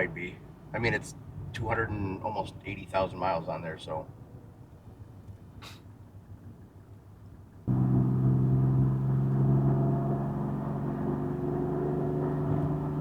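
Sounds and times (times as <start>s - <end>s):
diesel engine droning at full throttle: 7.7s - 13.0s.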